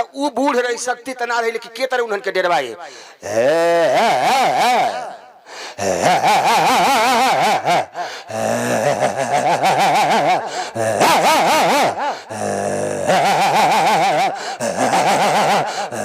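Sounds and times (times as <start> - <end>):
man growling: 5.8 - 6.6, 7.4 - 16.0
man imitating dog whines: 10.9 - 12.2.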